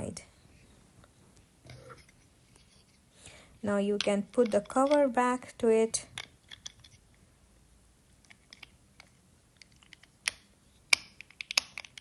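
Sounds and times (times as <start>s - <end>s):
plastic halves snapping shut: 9.9s - 12.0s.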